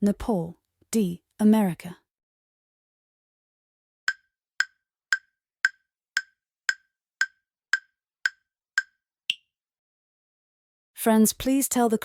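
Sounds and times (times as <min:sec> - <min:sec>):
clock-like timer ticks: 0:04.1 - 0:09.4.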